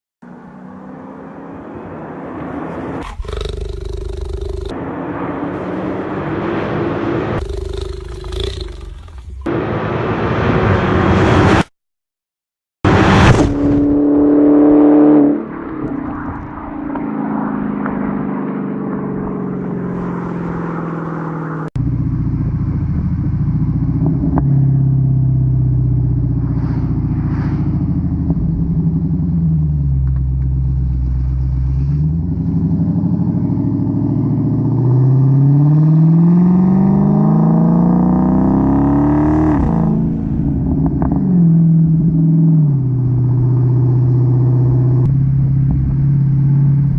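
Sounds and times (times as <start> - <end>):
car engine revving: 0.2 - 11.7, 12.9 - 46.9.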